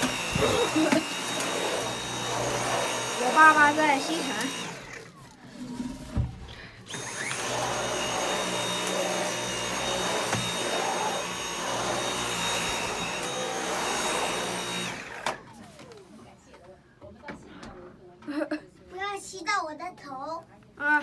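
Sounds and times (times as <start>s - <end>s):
vacuum cleaner motor whine: 0.0s - 5.1s, 6.8s - 16.0s.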